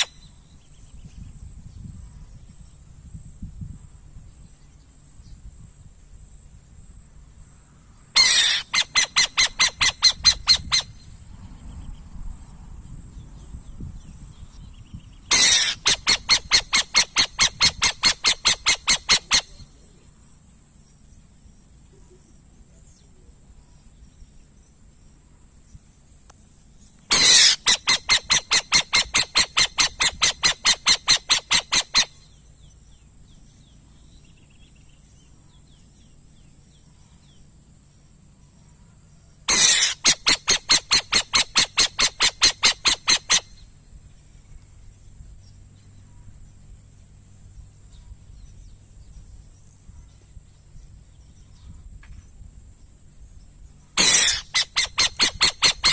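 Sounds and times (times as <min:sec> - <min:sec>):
bird harsh repeated calls: 0:00.0 - 0:00.3, 0:08.2 - 0:11.0, 0:15.3 - 0:19.8, 0:27.1 - 0:32.5, 0:39.5 - 0:43.7, 0:53.9 - 0:55.9.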